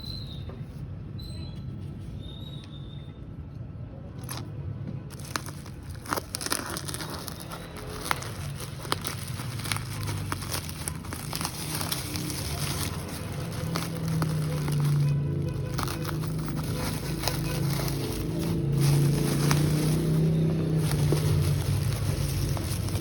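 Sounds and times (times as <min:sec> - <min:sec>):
packaging crinkling and tearing: 0:05.1 - 0:23.0.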